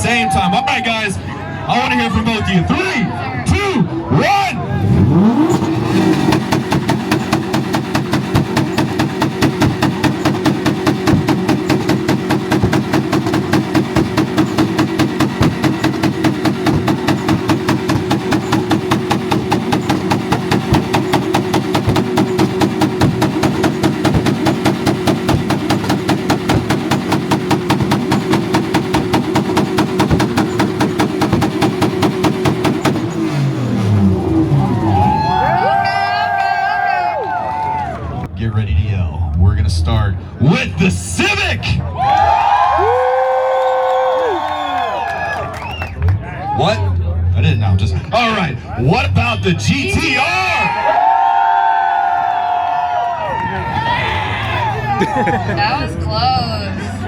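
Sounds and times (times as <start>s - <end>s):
engines droning: 0.0s - 57.0s
exhaust pops and bangs: 5.1s - 34.3s.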